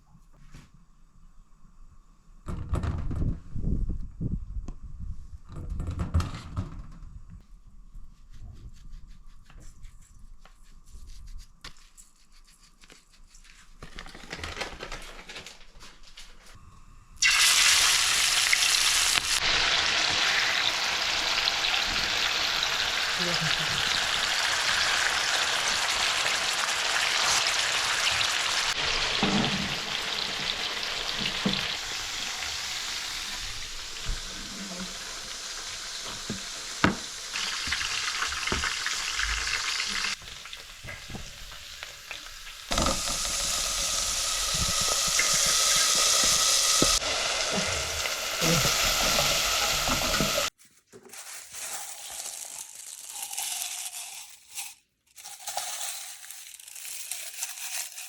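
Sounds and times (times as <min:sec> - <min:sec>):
food sizzling in hot oil: 0:17.2 - 0:50.5.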